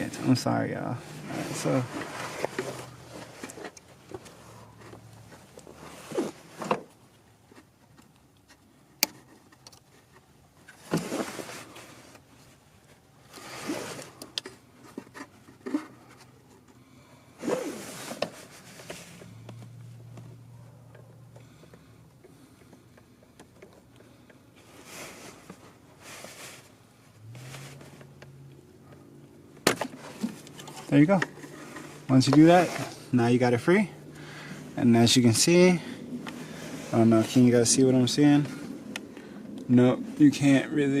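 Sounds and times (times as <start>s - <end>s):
hand tool scraping: 1.0s - 5.0s, 29.9s - 33.1s.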